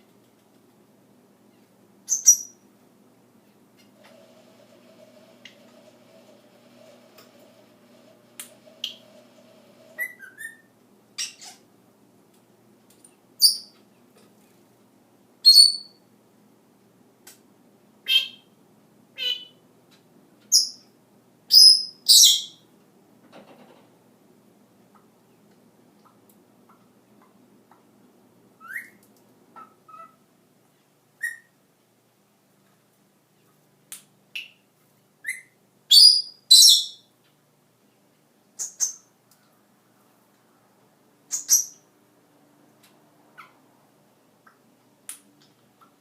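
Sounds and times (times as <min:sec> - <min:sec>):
parrot chirps: 0:02.1 - 0:02.6, 0:10.0 - 0:11.6, 0:15.4 - 0:16.0, 0:18.0 - 0:18.5, 0:19.2 - 0:19.6, 0:21.5 - 0:22.6, 0:28.6 - 0:29.0, 0:31.2 - 0:31.6, 0:35.2 - 0:37.1, 0:41.3 - 0:41.8
parrot whistles: 0:10.0 - 0:10.7, 0:28.6 - 0:29.0, 0:31.2 - 0:31.5
parrot squawking: 0:10.0 - 0:11.6, 0:18.1 - 0:18.4, 0:19.2 - 0:19.6, 0:29.6 - 0:30.2.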